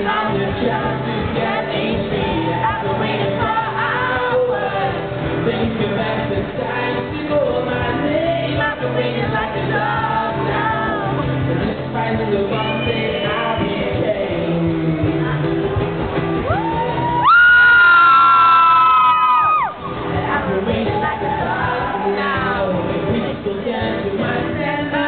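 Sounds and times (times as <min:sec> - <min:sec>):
man singing: 0:00.0 - 0:16.0, 0:20.1 - 0:25.0
live rock band music: 0:00.0 - 0:25.0.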